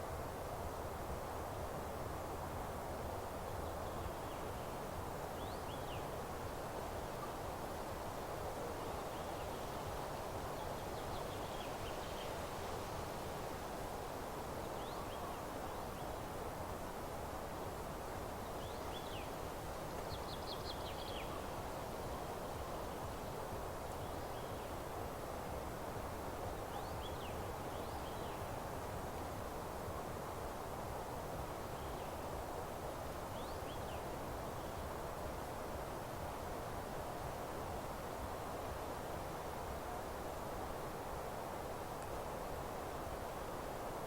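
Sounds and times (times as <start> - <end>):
wind through grass and leaves: 0.0 - 44.0
faint bird chirps and trills: 14.6 - 16.3, 18.4 - 19.4, 20.0 - 25.0, 26.5 - 28.6, 31.6 - 32.3, 33.2 - 34.8.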